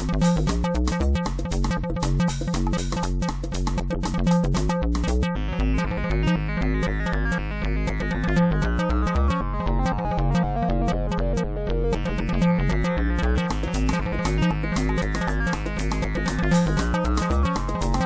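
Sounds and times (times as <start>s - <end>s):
background music with beat: 0.0s - 18.0s
synthesizer notes: 5.3s - 18.0s.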